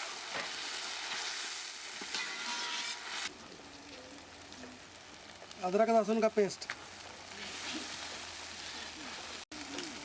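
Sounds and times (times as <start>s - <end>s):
spatula scraping a pan: 0.0s - 3.3s
onion and tomato sizzling in oil: 0.0s - 10.0s.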